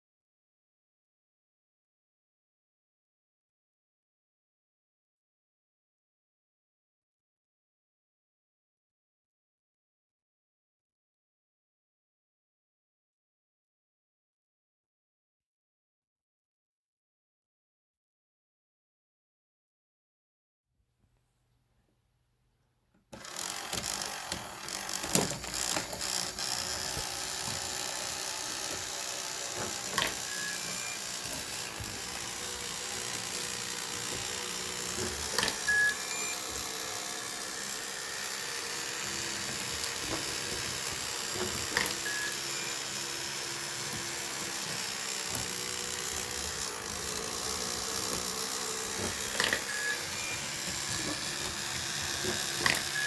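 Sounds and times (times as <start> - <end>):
small electric motor whirring: 23.2 - 53.0.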